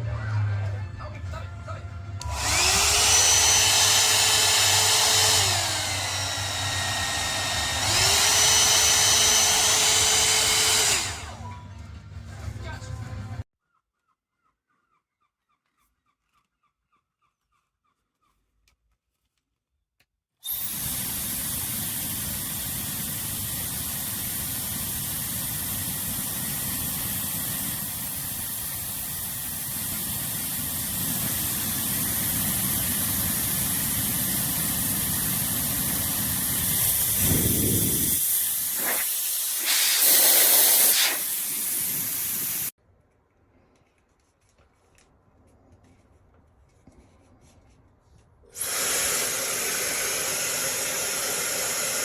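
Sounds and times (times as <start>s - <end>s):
hair dryer blowing: 2.2s - 11.5s, 20.4s - 42.8s, 48.6s - 52.0s.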